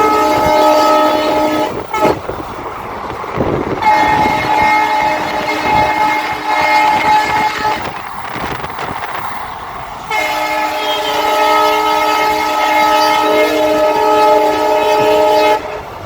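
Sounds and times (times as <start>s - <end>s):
locomotive horn chord: 0.0s - 2.2s, 3.8s - 8.0s, 10.1s - 16.0s
moving train noise: 0.0s - 16.0s.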